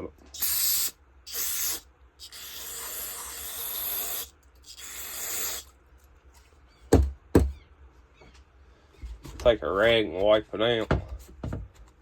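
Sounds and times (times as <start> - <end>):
aerosol can spraying: 0.4 - 5.7.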